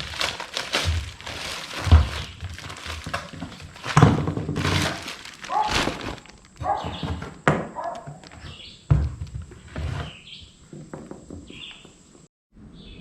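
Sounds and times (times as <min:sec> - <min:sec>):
birds chirping: 0:05.5 - 0:08.9, 0:11.4 - 0:12.0.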